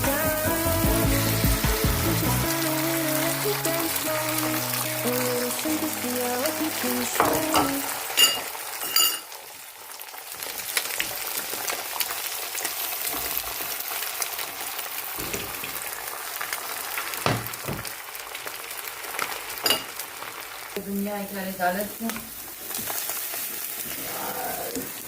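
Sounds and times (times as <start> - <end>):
food sizzling in frying pan: 0.0 - 25.0
utensil clinking against pan: 7.2 - 9.3.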